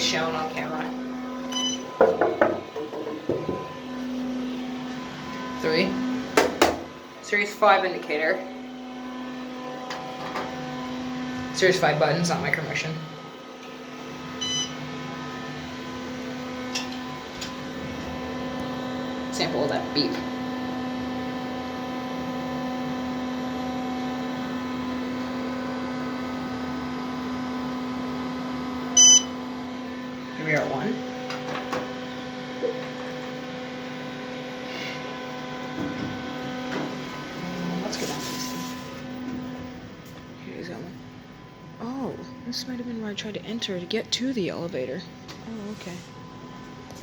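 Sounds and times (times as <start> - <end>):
electrical hum: 0.0 - 47.0
short electronic beep: 1.5 - 1.9, 14.4 - 14.7, 29.0 - 29.3.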